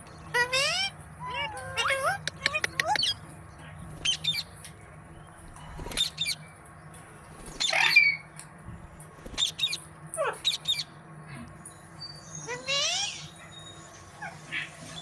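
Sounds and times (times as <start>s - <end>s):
parakeet squawking: 0.3s - 3.2s, 7.6s - 8.3s, 9.4s - 10.9s, 12.4s - 13.4s.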